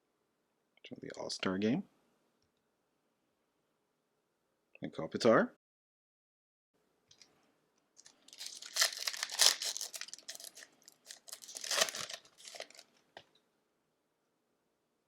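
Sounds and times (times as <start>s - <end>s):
plastic wrapper tearing and crinkling: 8.0s - 13.0s.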